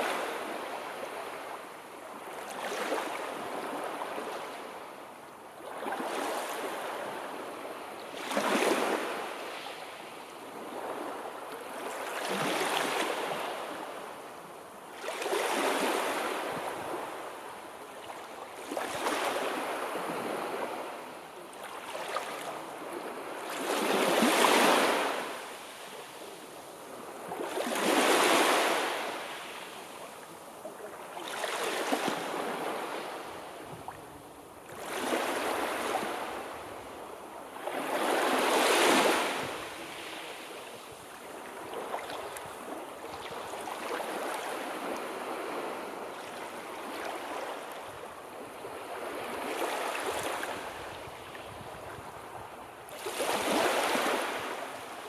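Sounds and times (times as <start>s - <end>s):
sea waves surging: 52.9s - 55.0s.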